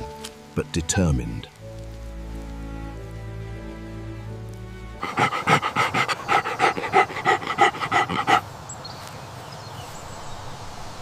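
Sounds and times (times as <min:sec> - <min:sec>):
dog panting: 0:05.0 - 0:08.5.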